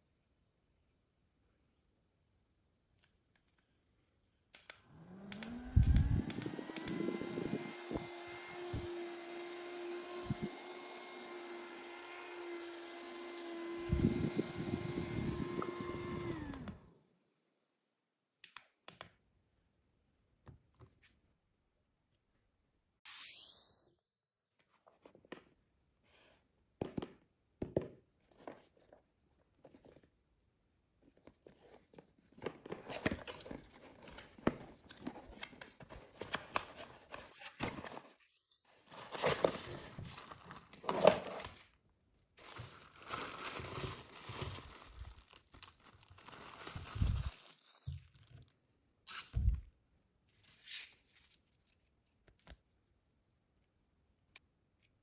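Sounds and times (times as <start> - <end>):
packaging tearing and crinkling: 38.8 - 41.6, 42.4 - 48.5.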